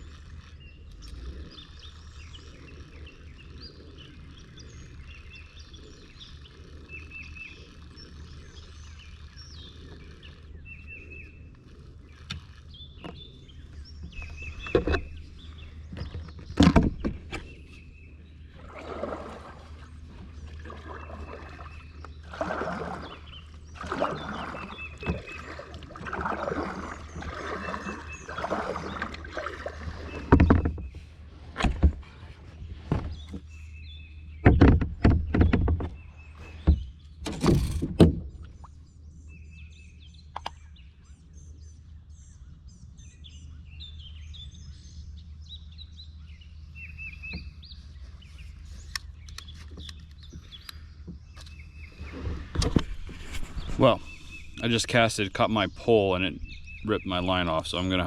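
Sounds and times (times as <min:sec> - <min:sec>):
paddle strokes swishing water: 0:00.0 - 0:33.8, 0:46.9 - 0:58.0
birds chirping: 0:00.0 - 0:58.0.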